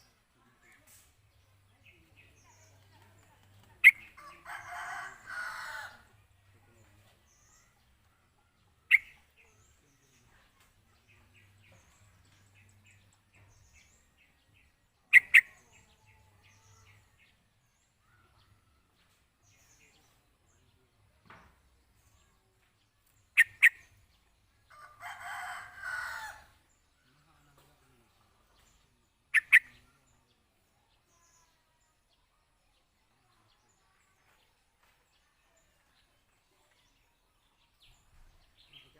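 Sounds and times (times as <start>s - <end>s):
birds calling: 3.6s - 6.1s, 23.2s - 26.8s, 28.6s - 30.1s.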